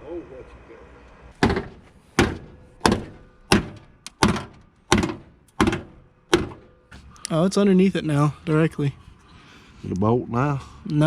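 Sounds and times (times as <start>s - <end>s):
heavy ringing thunks: 1.4s - 7.0s.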